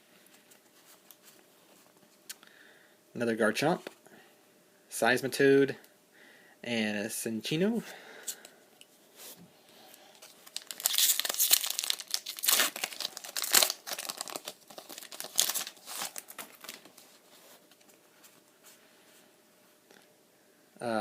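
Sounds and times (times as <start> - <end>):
foil wrapper crinkling and tearing: 10.2 - 17.2.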